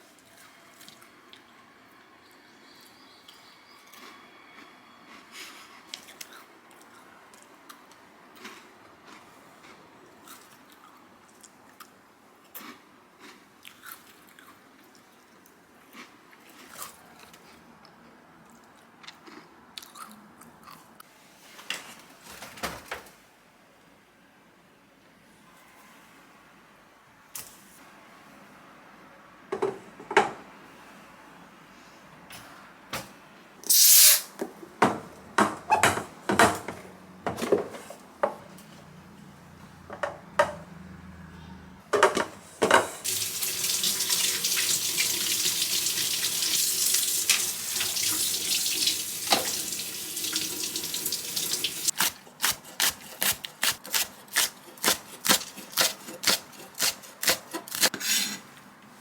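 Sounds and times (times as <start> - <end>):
kitchen knocks and clinks: 34.8 - 38.4, 42.0 - 43.1
faucet running into sink: 43.1 - 51.9.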